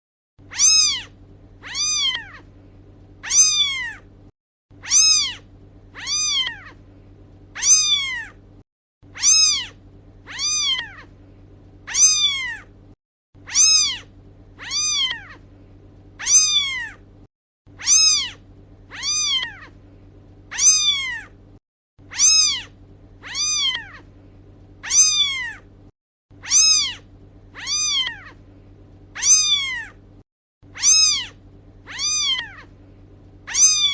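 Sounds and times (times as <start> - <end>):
steady low hum: 0.4 - 33.9
kitten meowing: 0.5 - 2.5, 3.2 - 4.1, 4.8 - 5.4, 6.0 - 6.8, 7.6 - 8.4, 9.1 - 11.1, 11.9 - 12.7, 13.4 - 15.4, 16.2 - 17.0, 17.8 - 19.8, 20.5 - 21.3, 22.1 - 24.1, 24.8 - 25.6, 26.4 - 27.0, 27.6 - 28.4, 29.2 - 30.0, 30.7 - 32.7, 33.5 - 33.9.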